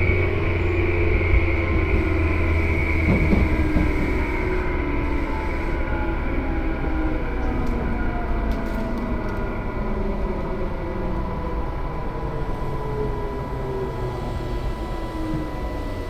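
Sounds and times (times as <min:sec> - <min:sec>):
train wheels rumbling on rails: 0:00.0 - 0:16.0
electric motor whine: 0:13.2 - 0:16.0.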